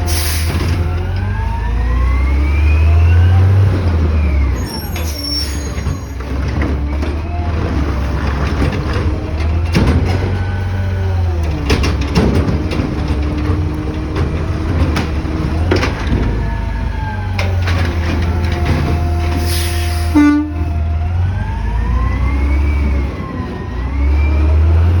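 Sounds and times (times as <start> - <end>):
garbage truck engine running: 0.0 - 25.0
horn honk: 19.9 - 20.7.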